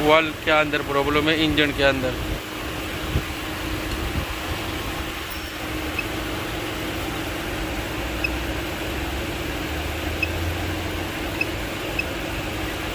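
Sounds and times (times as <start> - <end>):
engine idling and misfiring: 0.0 - 12.9
short high chirps: 5.3 - 6.1.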